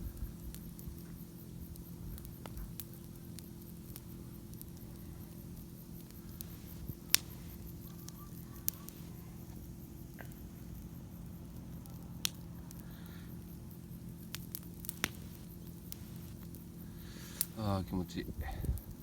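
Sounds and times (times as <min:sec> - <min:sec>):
campfire crackling: 0:00.0 - 0:19.0
sharp pops: 0:00.5 - 0:17.8.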